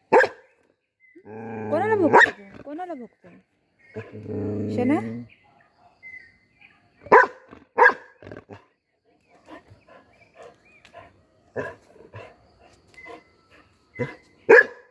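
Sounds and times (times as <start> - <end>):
dog barking: 0.1 - 0.5, 2.0 - 2.4, 5.4 - 6.1, 7.0 - 8.2, 14.0 - 14.9.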